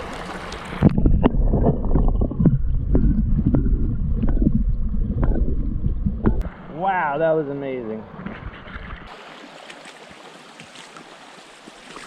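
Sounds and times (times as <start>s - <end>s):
stream water rushing: 0.0s - 1.0s, 6.4s - 12.0s
muffled underwater rumbling: 0.0s - 6.8s, 8.0s - 9.1s
water gurgling: 0.0s - 12.0s
sharp underwater knocks: 0.8s - 6.5s.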